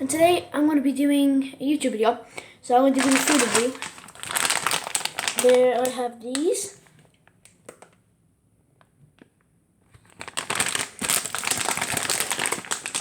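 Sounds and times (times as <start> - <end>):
sweet wrappers crinkling: 2.8 - 8.0, 10.0 - 13.0.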